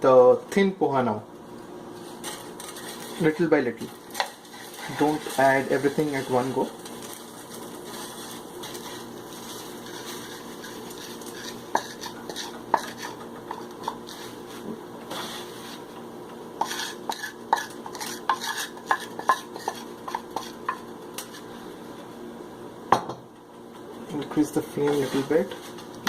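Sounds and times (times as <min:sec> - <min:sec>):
frying sizzle: 0:01.8 - 0:22.6.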